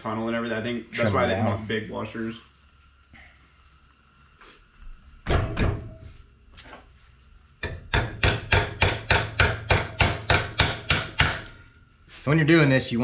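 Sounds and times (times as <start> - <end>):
hammer striking metal: 5.3 - 6.2, 7.6 - 11.6.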